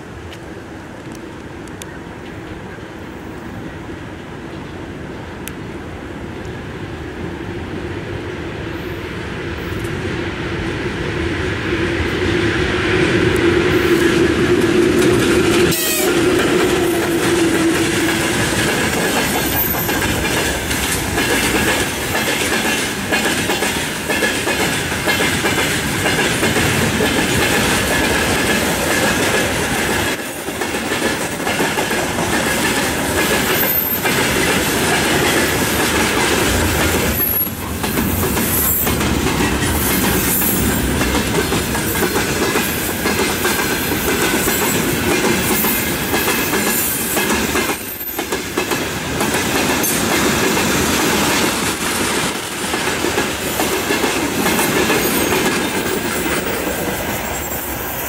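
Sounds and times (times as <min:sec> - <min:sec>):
train wheels clattering over rail joints: 0:14.0 - 0:57.1.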